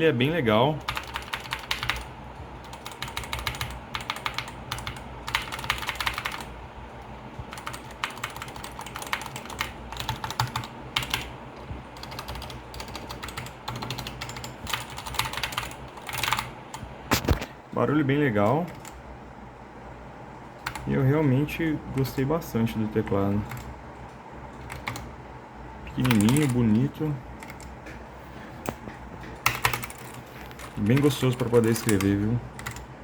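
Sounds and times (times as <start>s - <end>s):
mechanical keyboard typing: 0.7s - 6.5s, 7.4s - 17.4s, 18.4s - 19.0s, 20.6s - 20.9s, 23.0s - 23.7s, 24.6s - 25.1s, 25.9s - 27.8s, 28.7s - 32.9s.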